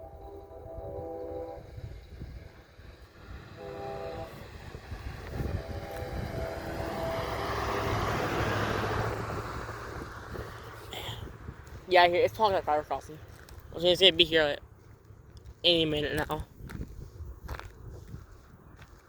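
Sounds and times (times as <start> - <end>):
locomotive horn blasts: 0.0 - 2.5, 3.2 - 8.3
rushing noise: 0.0 - 10.8.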